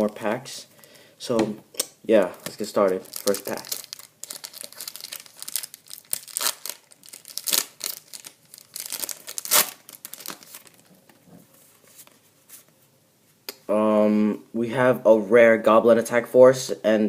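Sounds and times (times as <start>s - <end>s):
foil wrapper tearing and crinkling: 2.8s - 10.9s.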